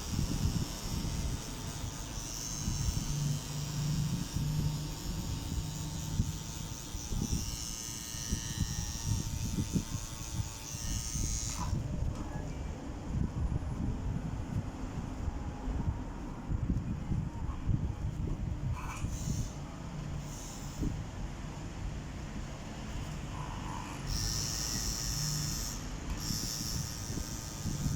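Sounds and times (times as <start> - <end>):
tattoo machine buzzing: 0.0 - 11.9, 18.7 - 21.0, 23.3 - 27.9.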